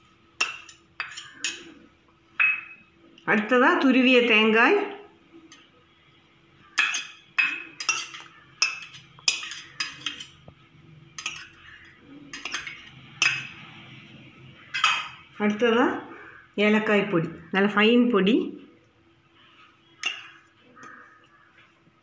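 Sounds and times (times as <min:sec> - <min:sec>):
spoon clinking against bowl: 0:02.4 - 0:02.9, 0:06.8 - 0:10.4, 0:11.2 - 0:11.6, 0:12.3 - 0:13.6.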